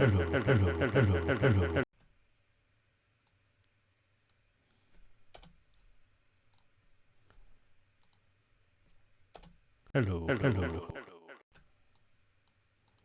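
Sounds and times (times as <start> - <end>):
faint clicks: 8.0 - 8.2, 11.5 - 13.0.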